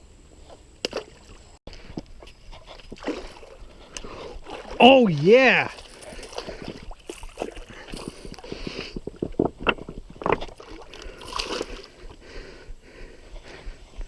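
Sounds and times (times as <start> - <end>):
water sloshing and splashing: 2.2 - 12.1.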